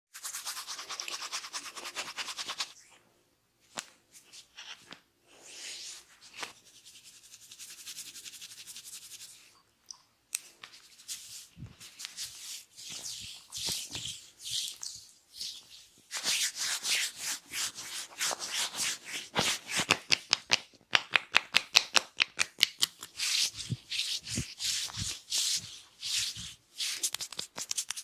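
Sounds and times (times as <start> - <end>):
fingers scratching through hair: 22.8 - 28.0.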